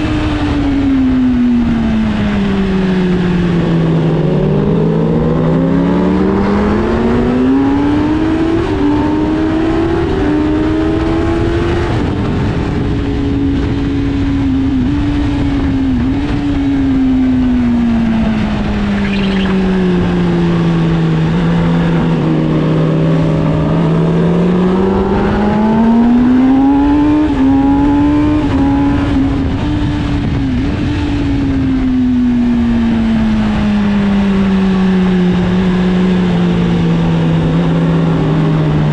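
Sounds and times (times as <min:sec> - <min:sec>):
motorcycle engine revving: 0:00.0 - 0:38.9
wind noise: 0:00.0 - 0:38.9
whistle-like squeal: 0:19.0 - 0:19.6.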